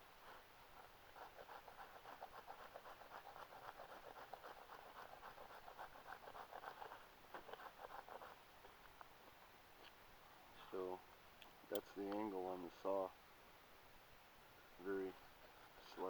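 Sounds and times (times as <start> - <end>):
small saw rasping through wood: 1.2 - 8.4.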